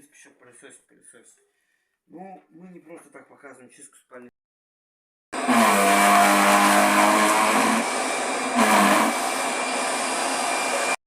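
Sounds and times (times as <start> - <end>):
vacuum cleaner running: 5.4 - 11.0.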